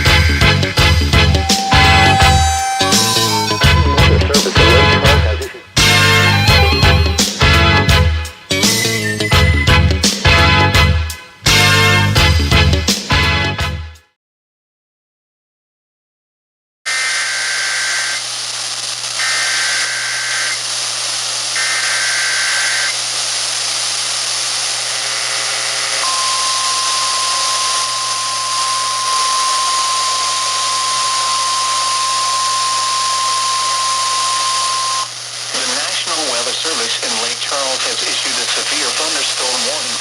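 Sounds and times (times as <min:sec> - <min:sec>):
single-pitch warning alarm tone: 0:01.2 - 0:04.4, 0:26.0 - 0:35.1
rasping digital header bursts: 0:01.2 - 0:07.3
static hiss: 0:01.4 - 0:07.5, 0:16.9 - 0:40.0.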